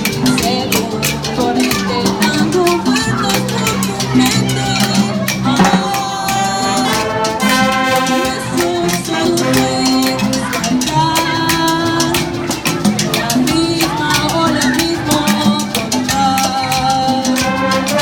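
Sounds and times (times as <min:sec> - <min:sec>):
jazz band playing latin rhythm: 0:00.0 - 0:18.0
shaker rhythm: 0:00.0 - 0:18.0.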